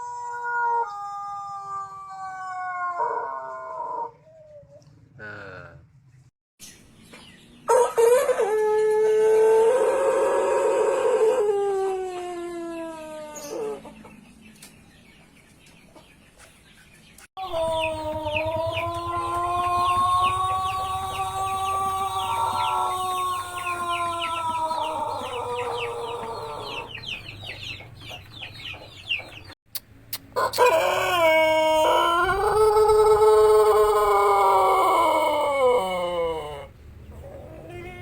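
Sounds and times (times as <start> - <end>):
rooster crowing: 0.0 - 4.2, 7.7 - 13.5, 17.4 - 27.0, 30.4 - 36.7.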